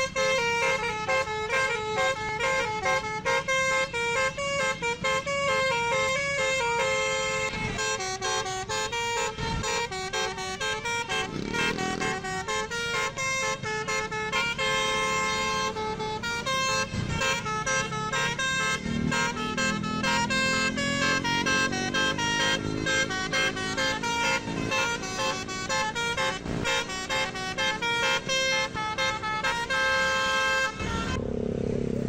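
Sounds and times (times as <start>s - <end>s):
multi-pitched bus horn melody: 0.0s - 31.3s
deeper rising tone: 18.8s - 27.8s.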